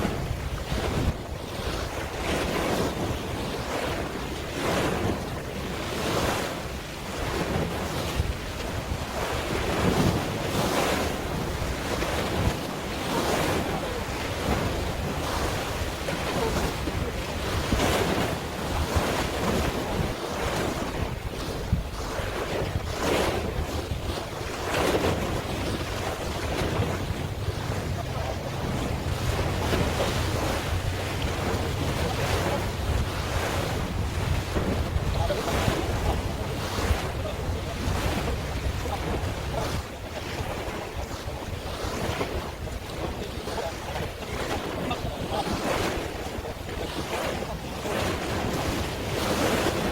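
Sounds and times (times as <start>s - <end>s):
sea water washing and splashing: 0.0s - 49.9s
wind buffeting microphone: 0.0s - 49.9s.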